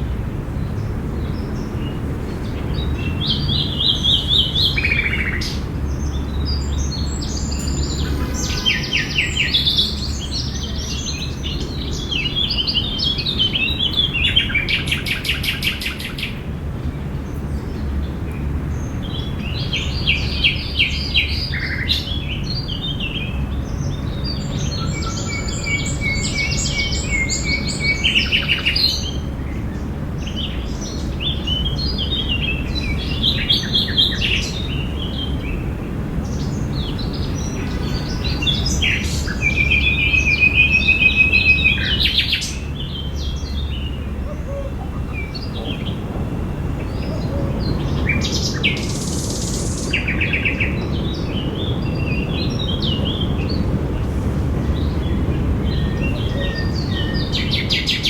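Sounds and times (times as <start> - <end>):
birds chirping and singing: 0.7 - 16.4, 18.8 - 53.9, 54.6 - 58.0
low background rumble: 22.2 - 58.0
bird rapid trills: 44.0 - 50.8.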